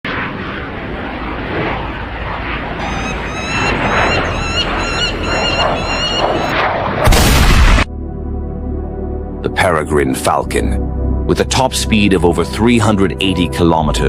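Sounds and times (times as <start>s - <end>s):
steady rushing noise: 0.0s - 7.9s
loud rushing burst: 0.2s - 7.9s
birds chirping: 2.7s - 6.7s.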